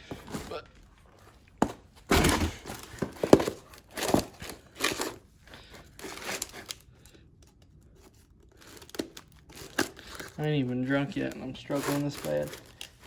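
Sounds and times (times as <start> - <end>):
packaging crinkling: 2.6 - 13.0.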